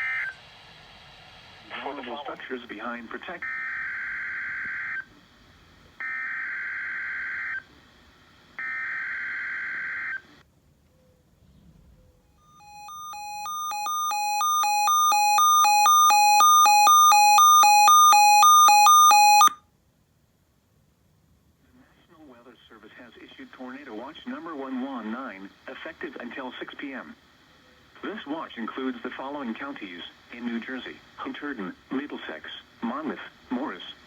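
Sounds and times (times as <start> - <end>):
rapid pulsed alert beeps: 12.5 - 19.6.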